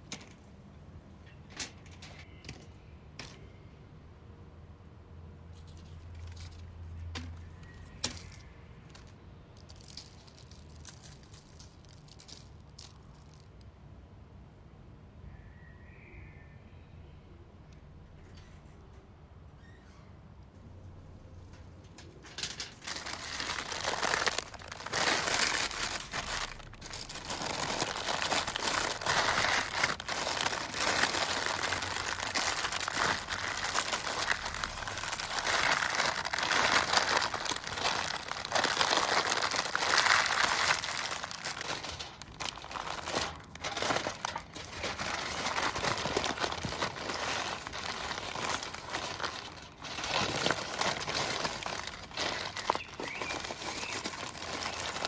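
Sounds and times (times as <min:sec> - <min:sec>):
paper and foil crinkling: 0:00.0 - 0:00.4, 0:05.6 - 0:13.6, 0:21.5 - 0:55.0.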